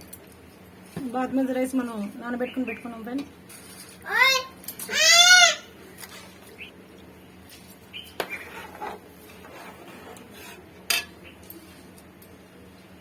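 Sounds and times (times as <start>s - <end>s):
spoon scraping metal pot: 8.2s - 11.1s.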